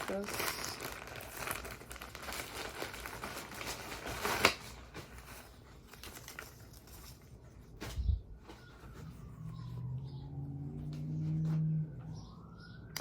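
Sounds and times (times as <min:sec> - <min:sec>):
plastic ripping: 0:00.0 - 0:07.9
plastic packaging crinkling: 0:00.0 - 0:09.0.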